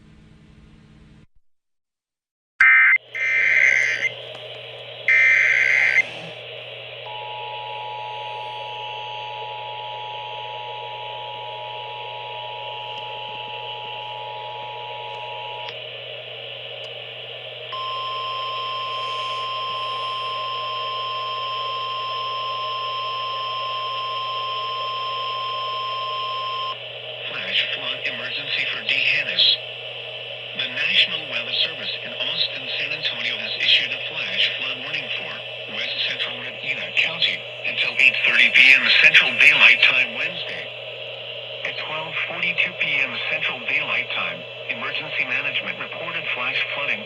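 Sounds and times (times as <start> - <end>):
radio static hiss and hum: 2.6 - 47.0
single-tone warning alarm: 3.0 - 4.3, 5.0 - 15.7, 17.7 - 46.0
raspy digital data bursts: 3.1 - 4.3, 5.0 - 6.5, 26.6 - 47.0
click: 3.6 - 6.0, 12.9 - 13.1
two-tone attention signal: 5.1 - 6.3.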